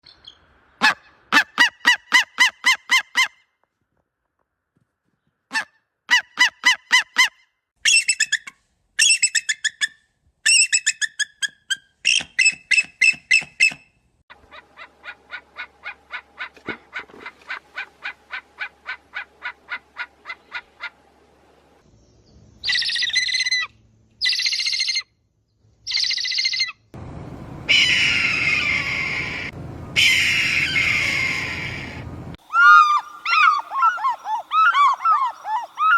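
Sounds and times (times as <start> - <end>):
eagle chittering calls: 14.4 - 21.0, 22.6 - 25.0, 25.9 - 26.8, 27.7 - 35.9
eagle screeching: 27.7 - 35.9.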